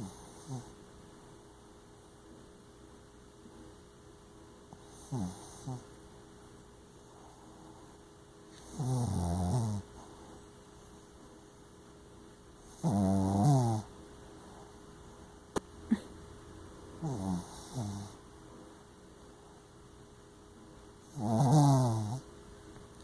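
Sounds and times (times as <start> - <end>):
dog snoring: 0.0 - 0.8, 4.7 - 5.9, 8.6 - 10.2, 12.6 - 13.9, 17.0 - 18.2, 21.0 - 22.3.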